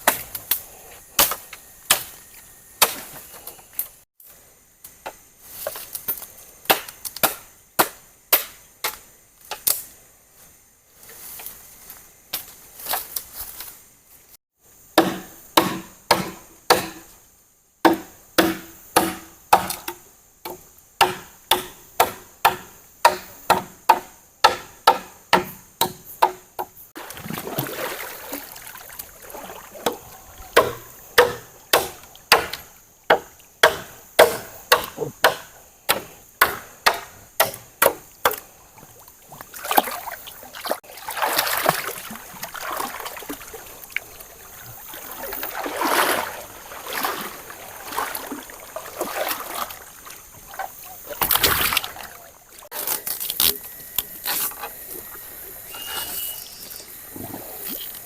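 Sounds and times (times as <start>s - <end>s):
blade chopping bamboo: 6.7s - 9.0s, 15.0s - 17.1s, 17.9s - 26.7s, 30.6s - 38.4s.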